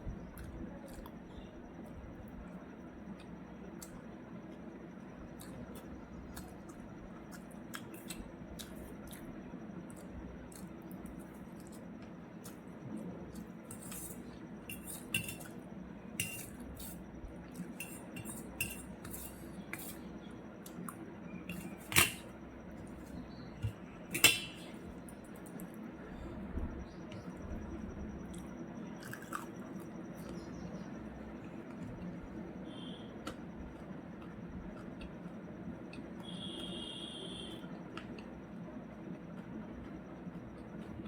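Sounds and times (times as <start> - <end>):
utensil scraping a plate: 17.7 - 20.1.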